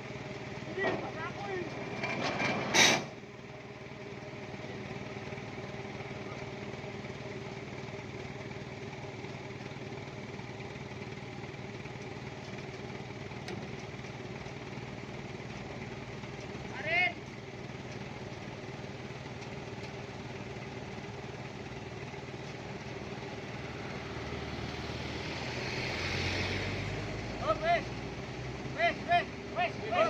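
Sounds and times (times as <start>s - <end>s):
vehicle engine running: 0.0s - 30.0s.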